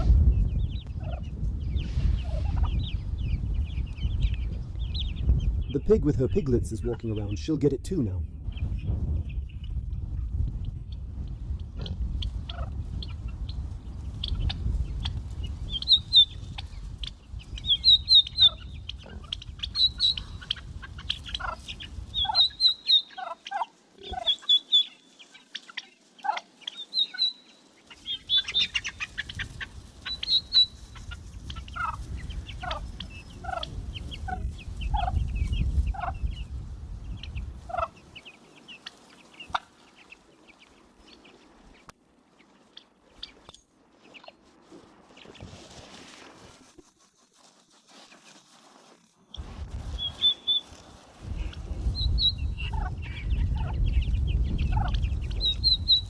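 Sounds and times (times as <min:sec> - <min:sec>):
poultry chirping peeps: 0:00.0 - 0:56.0
poultry clucking: 0:02.1 - 0:05.2, 0:10.6 - 0:13.4, 0:14.0 - 0:44.4, 0:49.3 - 0:56.0.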